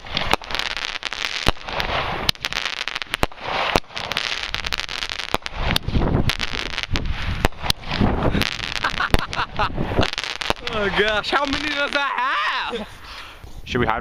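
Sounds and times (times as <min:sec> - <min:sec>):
fireworks popping and crackling: 0:00.0 - 0:13.7.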